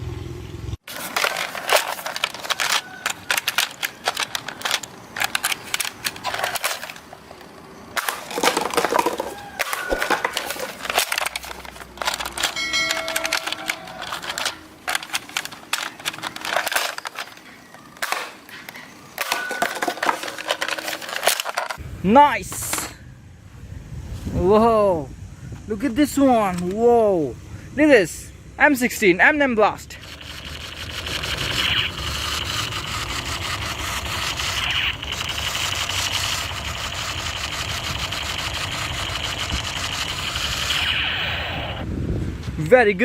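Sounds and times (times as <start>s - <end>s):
plastic toy gun clicks: 1.2s - 7.1s, 8.0s - 18.5s.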